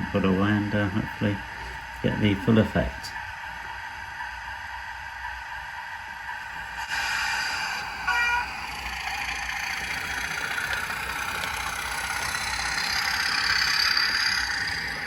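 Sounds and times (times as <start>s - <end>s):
diesel engine sound from small speaker: 7.0s - 15.0s.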